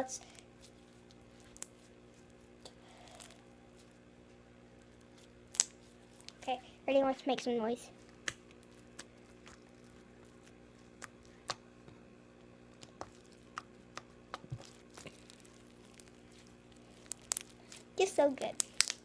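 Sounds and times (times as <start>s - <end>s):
slime squelching and popping: 5.0s - 6.5s, 8.0s - 12.0s, 12.6s - 19.0s.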